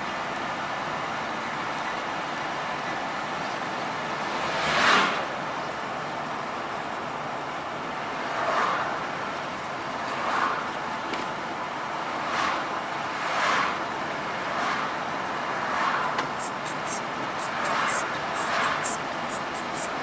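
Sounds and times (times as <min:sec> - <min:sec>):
highway road noise: 0:00.0 - 0:20.0
vehicles whooshing past: 0:04.0 - 0:05.5, 0:08.0 - 0:20.0.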